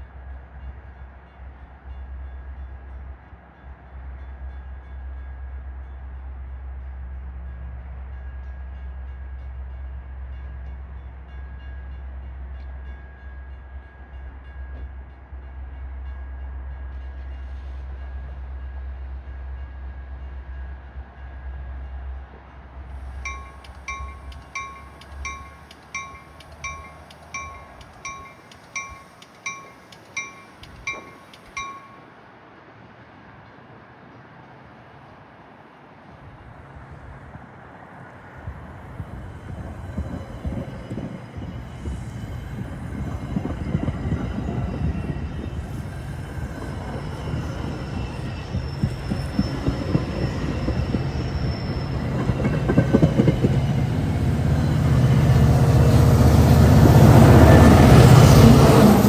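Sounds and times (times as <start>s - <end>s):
train rumbling: 0.0s - 34.6s, 35.3s - 59.0s
train warning bell ringing: 23.1s - 32.1s, 39.5s - 59.0s.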